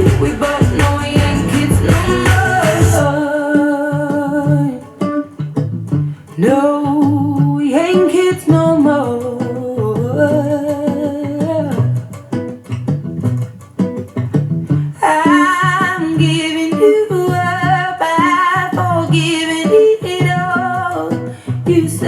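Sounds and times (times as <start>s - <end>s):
person singing long notes: 0.0s - 5.3s, 6.4s - 12.0s
plucked guitar: 0.0s - 22.0s.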